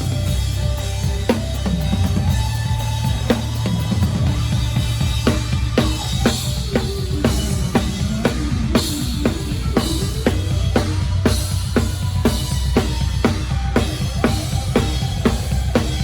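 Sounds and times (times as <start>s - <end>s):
band playing: 0.0s - 16.0s.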